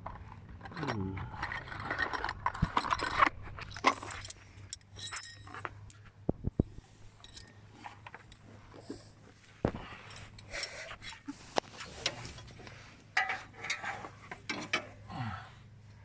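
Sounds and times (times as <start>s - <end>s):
metal hardware clinking: 0.6s - 6.1s, 7.2s - 8.4s, 12.0s - 15.0s.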